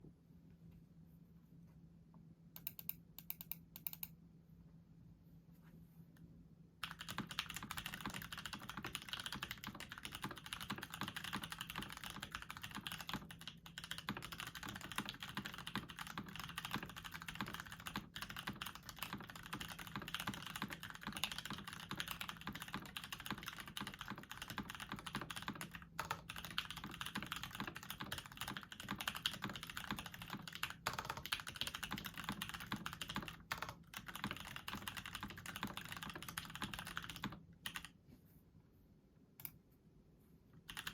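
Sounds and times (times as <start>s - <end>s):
fast typing on mechanical keyboard: 6.8s - 38.0s, 40.7s - 40.9s.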